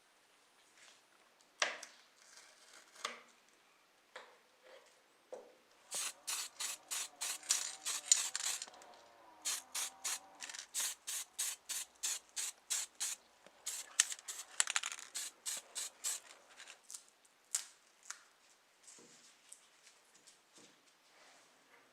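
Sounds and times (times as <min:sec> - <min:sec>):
hand rubbing model car: 0:05.9 - 0:08.7.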